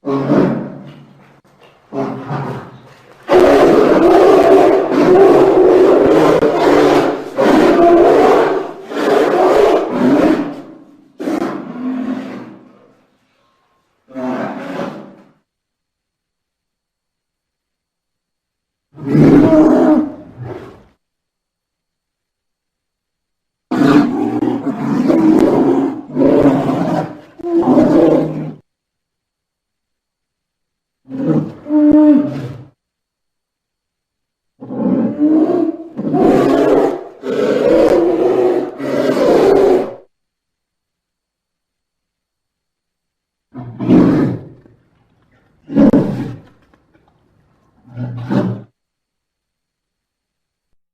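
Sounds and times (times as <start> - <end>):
polar bear roaring growls: 0.0 - 0.9, 1.9 - 12.8, 14.1 - 15.2, 19.0 - 20.8, 23.7 - 28.6, 31.0 - 32.8, 34.6 - 40.1, 43.5 - 44.7, 45.6 - 46.5, 47.8 - 48.7.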